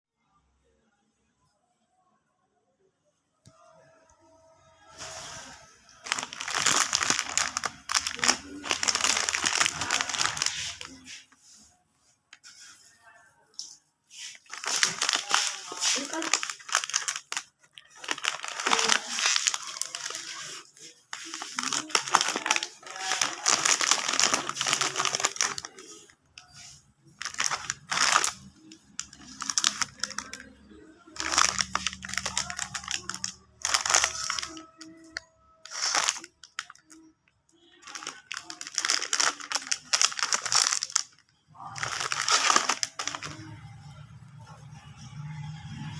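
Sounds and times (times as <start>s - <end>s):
packaging crinkling and tearing: 5.0s - 11.2s, 14.3s - 37.1s, 37.8s - 43.6s.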